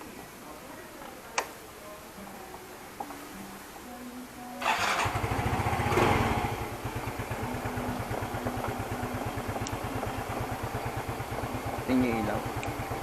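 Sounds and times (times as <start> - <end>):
scooter engine starting and idling: 4.6 - 13.0.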